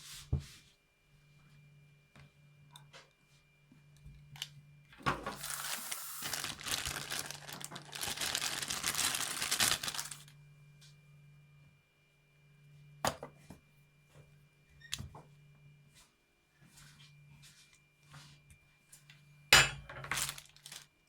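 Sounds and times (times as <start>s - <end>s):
packaging crinkling and rustling: 5.0s - 10.3s, 19.9s - 21.0s.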